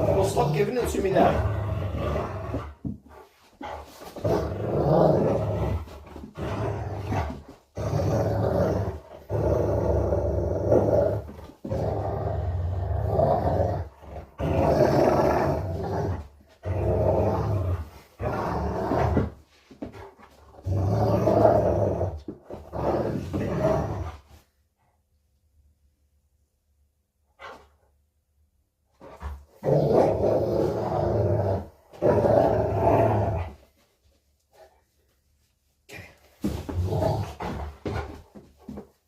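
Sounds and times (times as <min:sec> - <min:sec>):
dog play-growling: 0:00.0 - 0:24.4, 0:29.0 - 0:33.9, 0:36.2 - 0:39.0.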